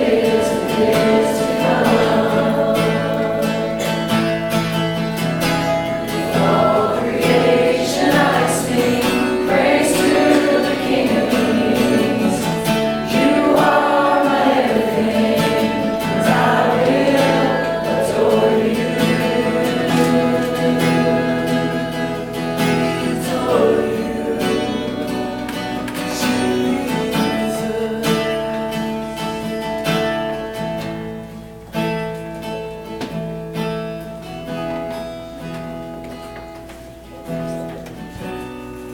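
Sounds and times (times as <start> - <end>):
group of voices singing: 0.0 - 4.4, 5.9 - 29.1
strummed acoustic guitar: 0.0 - 38.9.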